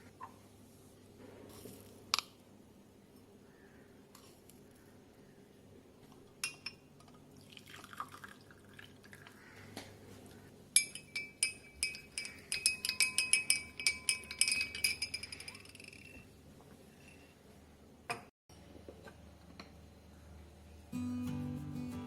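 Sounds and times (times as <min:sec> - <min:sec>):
utensil clinking against glass: 0:10.8 - 0:16.2.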